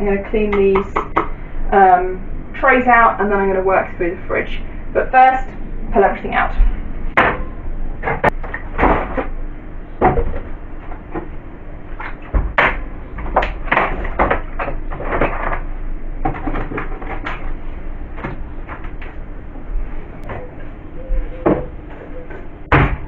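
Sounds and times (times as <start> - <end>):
containers clunking and rattling: 12.0 - 17.6.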